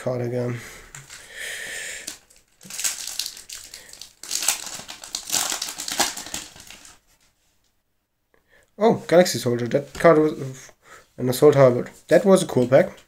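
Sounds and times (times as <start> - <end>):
foil wrapper crinkling: 0.9 - 1.3, 2.0 - 7.0.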